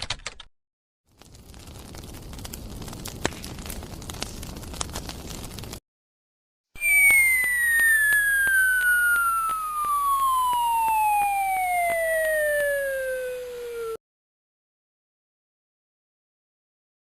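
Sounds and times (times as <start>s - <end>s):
descending whistle: 6.8s - 14.0s.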